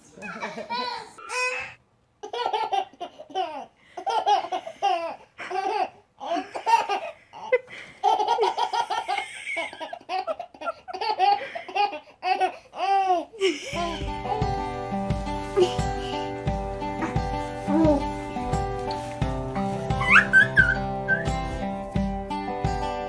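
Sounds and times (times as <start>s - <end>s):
young child giggling: 0.2s - 14.2s, 20.0s - 21.2s.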